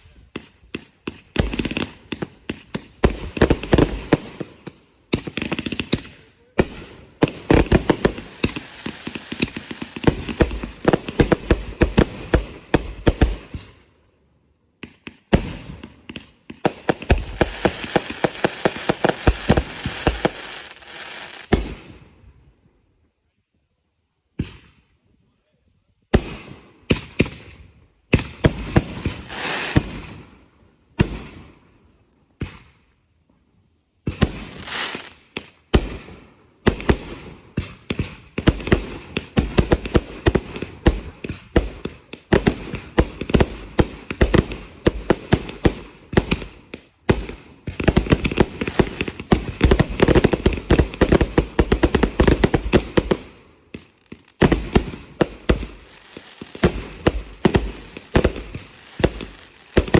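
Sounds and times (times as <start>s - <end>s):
fireworks crackling and popping: 0.0s - 13.8s, 14.8s - 22.0s, 26.1s - 30.3s, 34.0s - 59.9s
fireworks bangs: 0.3s - 13.7s, 15.3s - 22.0s, 36.7s - 59.9s.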